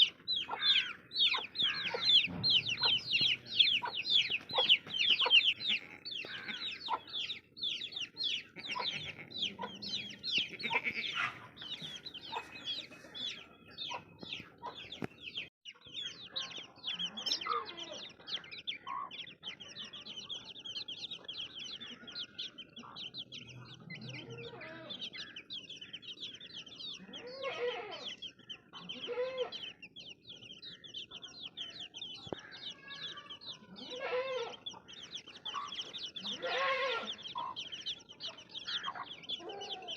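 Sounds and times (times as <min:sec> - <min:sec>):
lower bird calls: 0:00.0 - 0:19.0
baby chicks peeping: 0:00.0 - 0:39.9.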